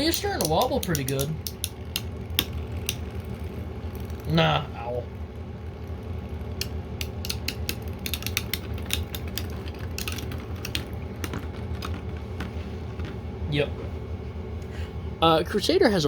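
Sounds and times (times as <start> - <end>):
spinning tops clicking and clacking: 0.0 - 4.3, 6.6 - 12.6
spinning tops whirring: 0.0 - 4.4, 5.1 - 13.6.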